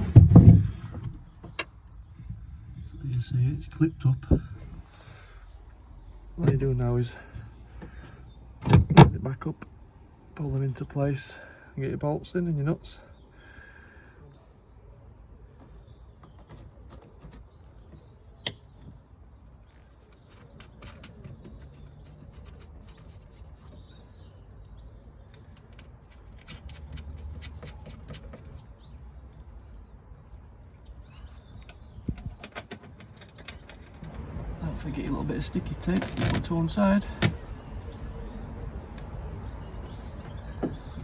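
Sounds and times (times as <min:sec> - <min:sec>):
small metal clicks and taps: 0:18.4 - 0:19.0.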